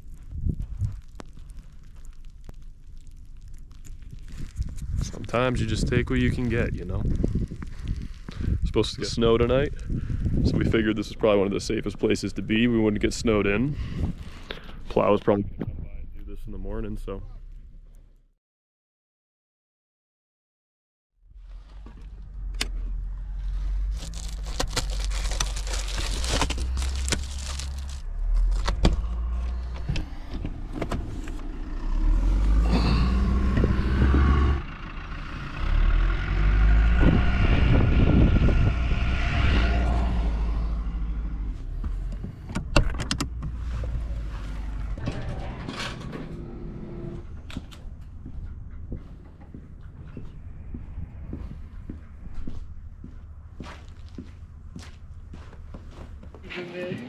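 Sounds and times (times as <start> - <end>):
van engine revving: 21.4 - 56.2.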